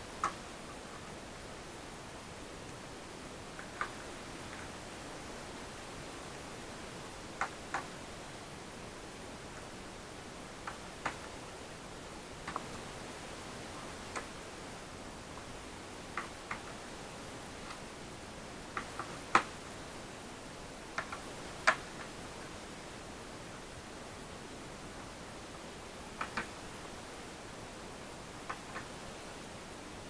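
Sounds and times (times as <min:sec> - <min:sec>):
steady hiss: 0:00.0 - 0:30.0.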